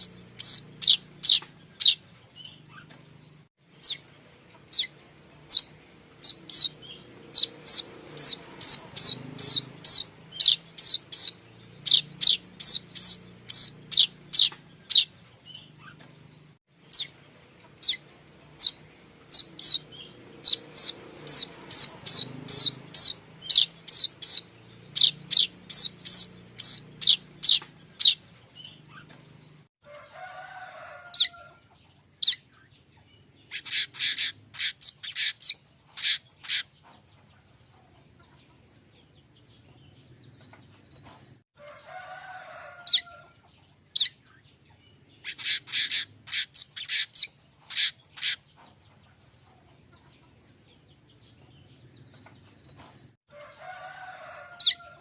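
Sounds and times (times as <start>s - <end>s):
bird chirping: 0.0s - 29.7s, 31.1s - 41.4s, 42.8s - 53.2s
rough bird call: 4.7s - 16.1s, 18.6s - 29.2s.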